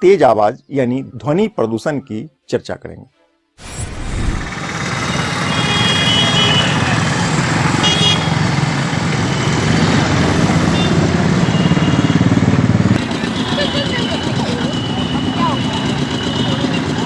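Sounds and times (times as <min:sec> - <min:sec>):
road traffic engines: 0:03.6 - 0:17.0
car horns honking: 0:04.2 - 0:17.0.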